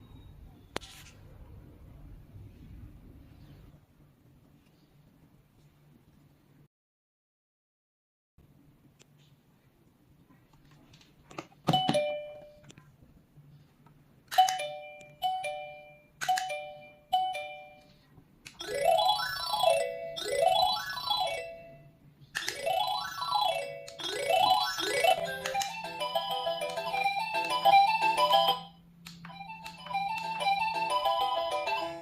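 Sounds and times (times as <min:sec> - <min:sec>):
doorbell ding-dong chime: 0:11.7 - 0:12.6
doorbell chime tune: 0:11.8 - 0:12.6, 0:14.4 - 0:17.9, 0:29.3 - 0:32.0.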